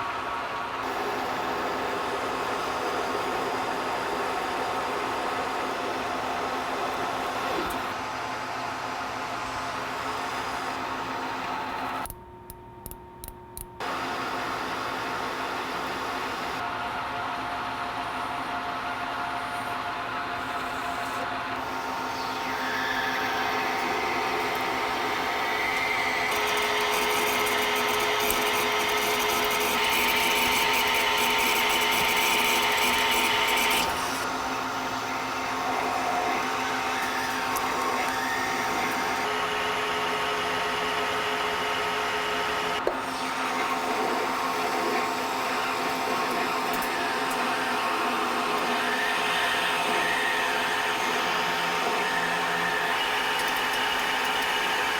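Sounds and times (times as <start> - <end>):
machine tool gear whine: 20.4 - 54.9
harsh metal cutting noise: 21.6 - 54.9.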